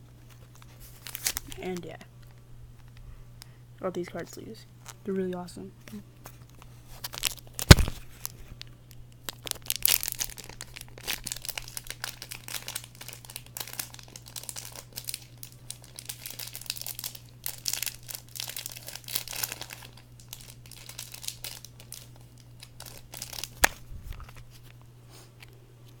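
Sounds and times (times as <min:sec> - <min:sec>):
steady low hum: 0:00.0 - 0:26.0
plastic packaging crinkling: 0:00.2 - 0:02.4, 0:06.3 - 0:24.8.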